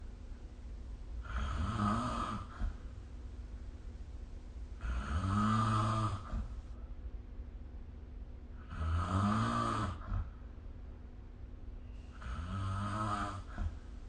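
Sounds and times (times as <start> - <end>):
person snoring: 1.2 - 2.8, 4.8 - 6.5, 8.6 - 10.3, 12.2 - 13.8.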